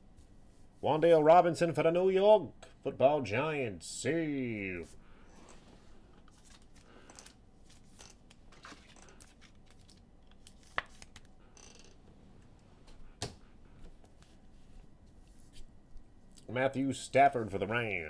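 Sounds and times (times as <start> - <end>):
trading cards rustling and clicking: 6.2 - 11.3.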